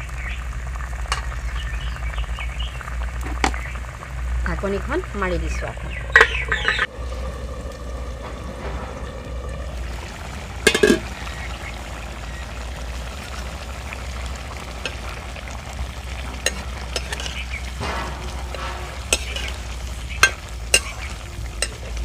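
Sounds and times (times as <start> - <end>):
food sizzling in a covered pan: 0.0 - 8.5, 9.2 - 22.0.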